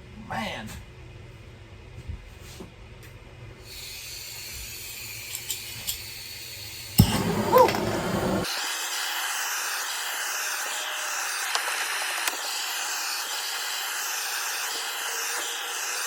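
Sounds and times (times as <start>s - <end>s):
blowtorch flame hissing: 6.4s - 9.5s.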